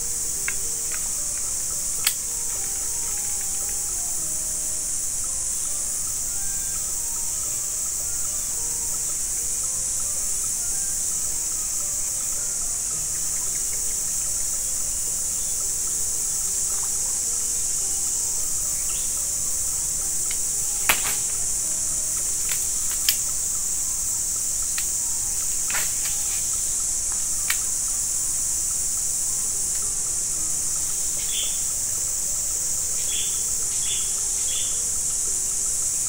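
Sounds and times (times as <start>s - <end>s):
high-pitched insect chorus: 0.0s - 36.0s
sharp clicks: 0.4s - 4.1s, 20.1s - 23.5s.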